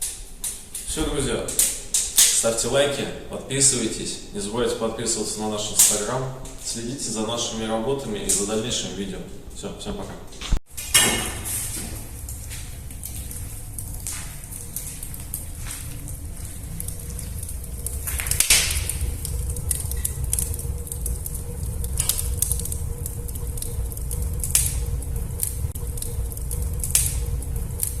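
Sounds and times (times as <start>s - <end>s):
fire crackles: 0.0s - 2.6s, 10.7s - 28.0s
wood fire rumbling: 10.6s - 28.0s.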